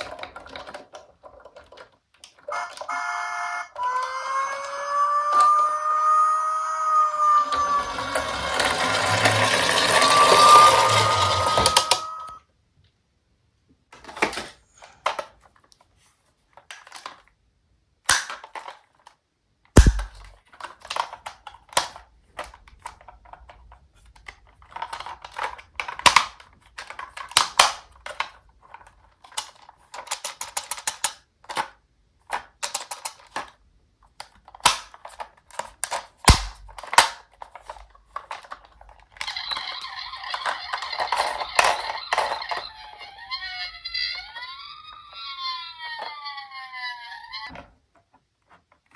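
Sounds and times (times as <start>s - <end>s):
toy cars clicking and rattling: 0.0s - 6.2s, 6.8s - 12.4s, 16.5s - 17.3s, 18.1s - 19.2s, 20.2s - 46.6s
toy siren wailing: 2.5s - 12.4s, 39.3s - 47.5s.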